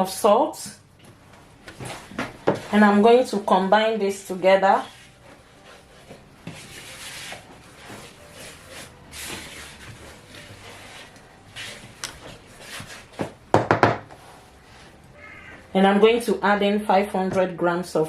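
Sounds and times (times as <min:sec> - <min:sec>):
utensil scraping through flour: 0:04.8 - 0:13.3.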